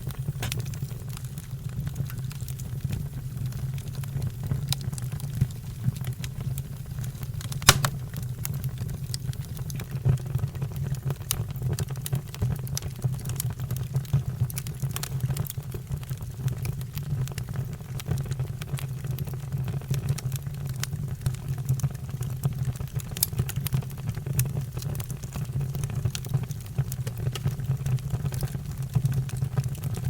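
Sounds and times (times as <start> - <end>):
fire crackling: 0.0 - 19.2, 22.5 - 30.0
loud pop from fire: 7.6 - 8.6.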